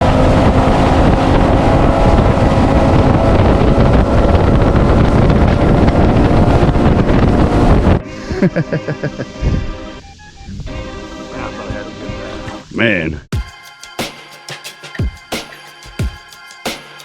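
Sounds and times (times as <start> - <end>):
outboard motor running at speed: 0.0 - 8.0
wind buffeting microphone: 0.0 - 8.0, 9.2 - 12.6.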